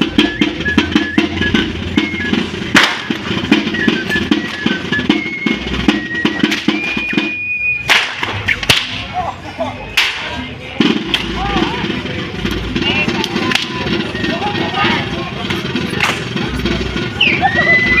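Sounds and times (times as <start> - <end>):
flute and drum dance music: 0.0 - 9.2, 9.9 - 18.0
sharp loud cracks: 2.7 - 3.2.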